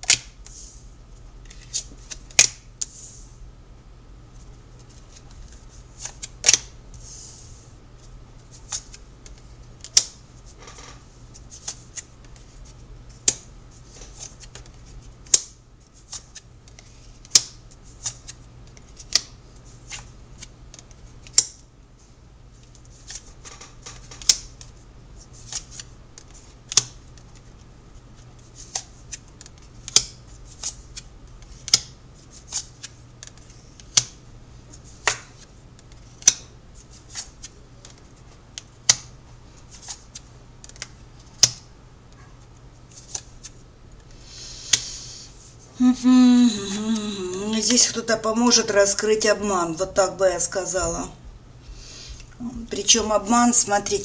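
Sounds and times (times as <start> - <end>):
faint hum: 0.0 - 54.0
cards shuffling: 1.4 - 2.6, 4.8 - 6.7, 8.5 - 10.1, 22.6 - 27.6, 28.3 - 41.6, 42.9 - 45.0.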